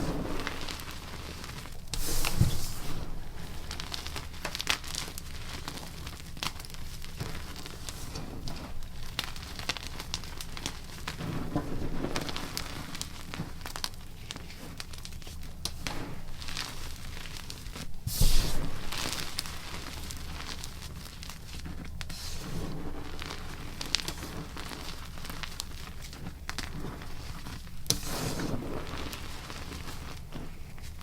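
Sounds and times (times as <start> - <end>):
chalk crunching by hand: 14.3 - 31.0.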